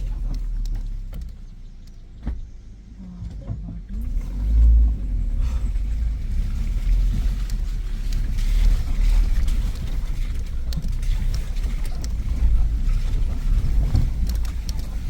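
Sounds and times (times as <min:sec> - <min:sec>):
car engine pulling: 0:00.0 - 0:15.0
knocks from bumpy ride: 0:02.1 - 0:04.1.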